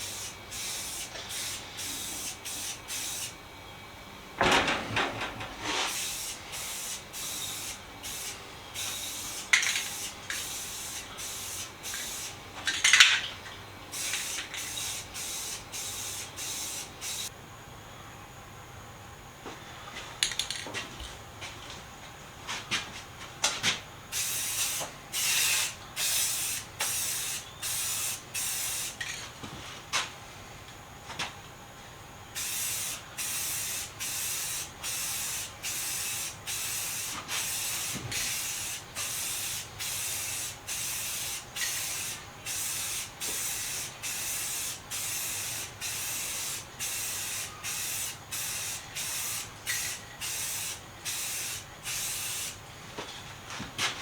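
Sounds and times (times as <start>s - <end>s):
aerosol spray can bursts: 0.0s - 3.3s, 5.9s - 12.4s, 14.0s - 17.3s, 24.2s - 29.0s, 32.4s - 52.6s
continuous spray hiss: 0.0s - 17.4s, 20.0s - 54.0s.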